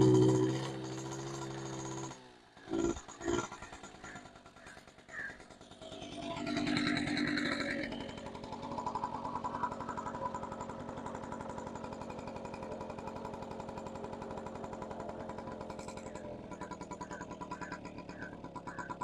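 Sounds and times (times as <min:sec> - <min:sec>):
two-stroke engine running: 0:00.0 - 0:19.0.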